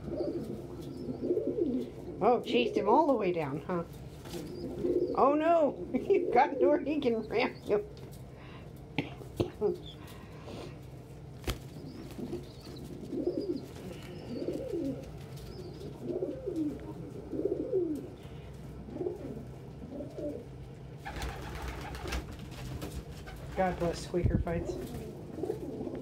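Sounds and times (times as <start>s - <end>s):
pigeons cooing: 0.0s - 2.9s, 4.2s - 7.8s, 11.6s - 22.2s, 24.6s - 26.0s.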